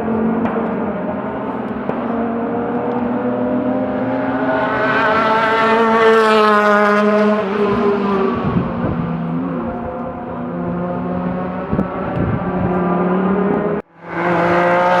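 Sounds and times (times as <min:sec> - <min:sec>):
drone of distant engines: 0:00.0 - 0:15.0
racing car engine passing: 0:00.0 - 0:15.0.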